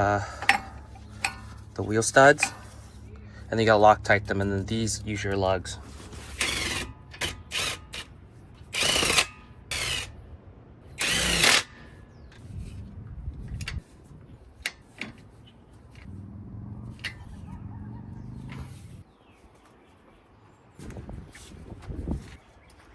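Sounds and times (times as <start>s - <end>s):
power tool bursts: 8.7s - 10.2s, 11.0s - 11.8s.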